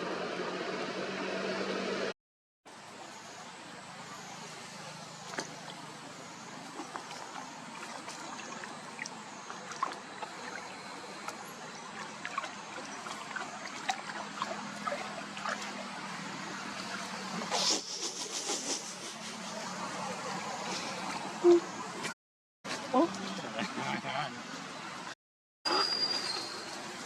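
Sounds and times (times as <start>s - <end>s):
water lapping and trickling: 2.7s - 17.7s, 18.8s - 24.9s
small plops and drips: 6.7s - 15.8s.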